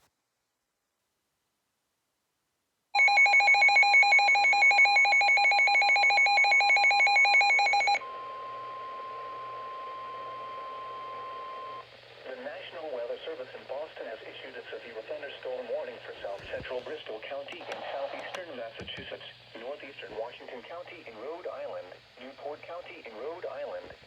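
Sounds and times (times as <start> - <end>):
steady warning alarm tone: 3.0 - 11.8
radio hiss: 10.6 - 24.0.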